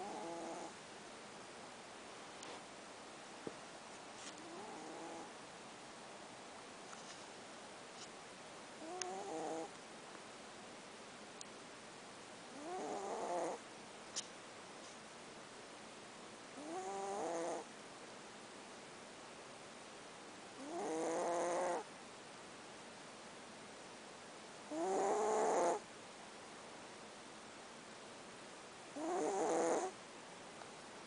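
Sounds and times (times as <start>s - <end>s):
pet snoring: 0.0s - 0.8s, 4.4s - 5.3s, 8.8s - 9.8s, 12.5s - 13.6s, 16.6s - 17.7s, 20.6s - 21.9s, 24.7s - 25.8s, 29.0s - 30.0s.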